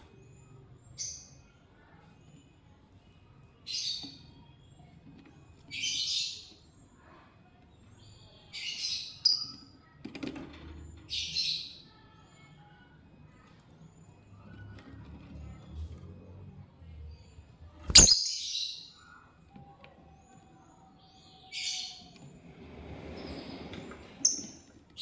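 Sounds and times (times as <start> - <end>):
sharp click: 17.9 - 18.2
lovebirds chirping harshly: 17.9 - 19.0.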